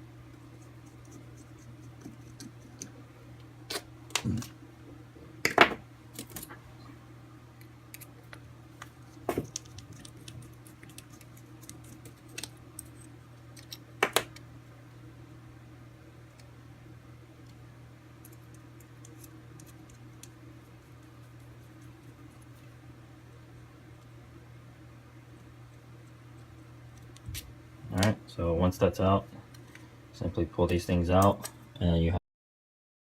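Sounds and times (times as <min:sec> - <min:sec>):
steady low hum: 0:00.0 - 0:32.2.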